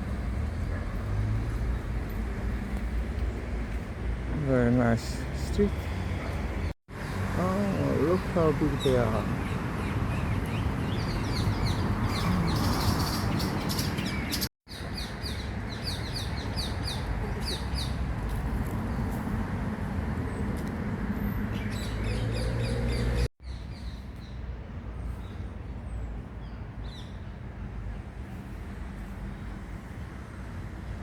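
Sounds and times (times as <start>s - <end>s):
low city rumble: 0.0s - 31.0s
small birds chirping: 7.4s - 18.1s.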